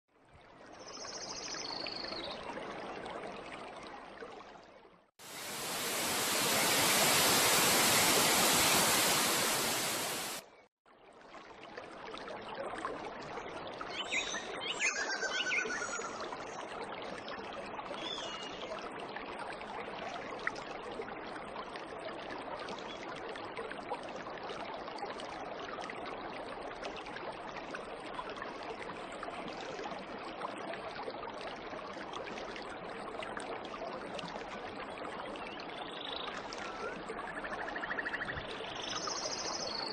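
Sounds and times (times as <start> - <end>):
waterfall rushing: 5.2 - 10.4.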